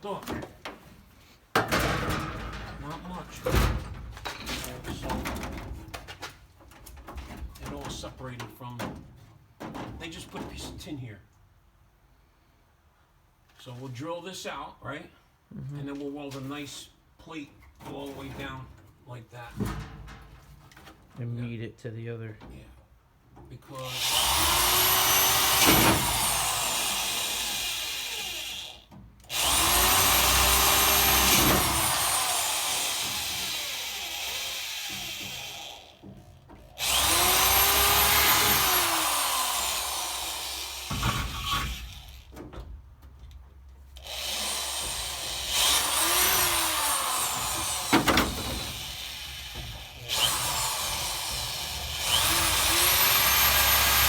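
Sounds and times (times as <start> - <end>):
power drill drilling sheet metal: 23.8 - 36.1, 36.8 - 42.3, 44.0 - 54.0.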